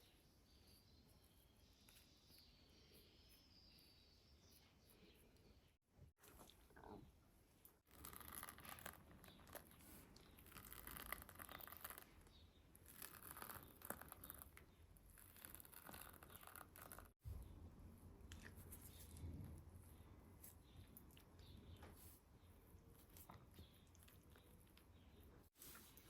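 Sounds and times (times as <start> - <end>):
food scraping and crinkling: 7.9 - 17.2.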